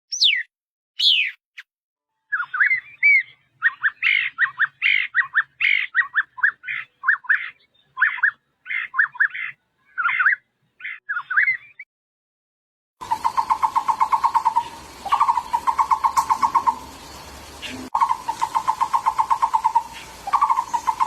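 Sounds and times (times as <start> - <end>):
bird chirping notes: 0.1 - 1.4, 2.2 - 11.8, 13.0 - 21.0
bird falling call notes: 13.0 - 21.0.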